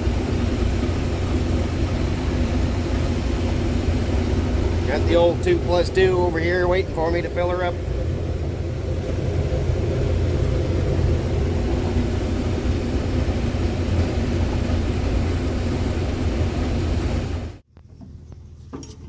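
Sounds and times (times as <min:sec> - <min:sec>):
combine harvester rumbling: 0:00.0 - 0:19.0.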